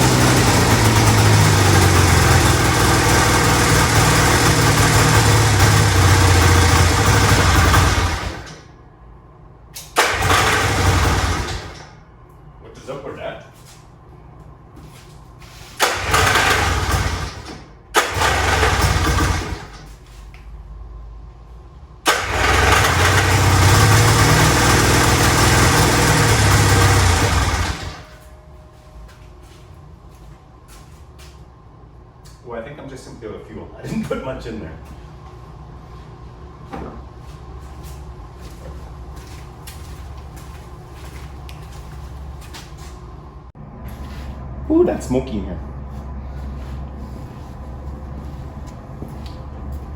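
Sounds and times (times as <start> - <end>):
snowmobile engine starting and stalling: 0.0 - 8.7, 10.0 - 12.0, 15.8 - 19.9, 22.1 - 28.2.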